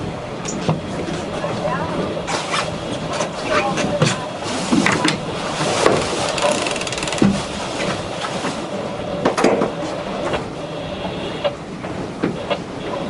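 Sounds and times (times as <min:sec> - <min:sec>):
wind and water rushing: 0:00.0 - 0:13.0
winch pawls ratcheting: 0:05.9 - 0:07.6.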